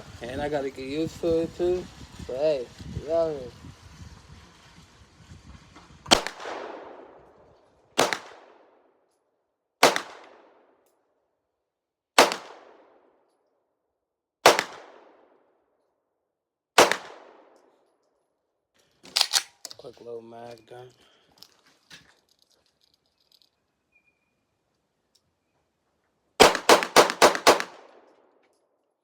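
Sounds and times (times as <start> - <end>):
pistol shots with echo: 6.1 - 7.2, 8.0 - 8.8, 9.8 - 10.7, 12.2 - 13.1, 14.4 - 15.3, 16.8 - 17.6, 26.4 - 28.1.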